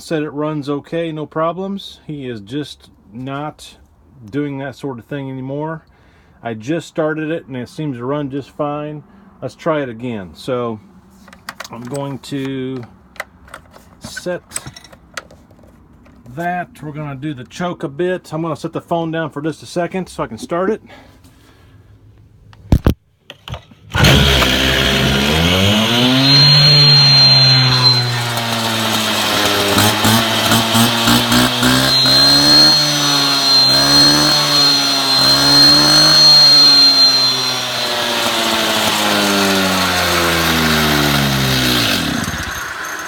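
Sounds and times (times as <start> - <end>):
two-stroke engine revving: 23.9 - 43.0.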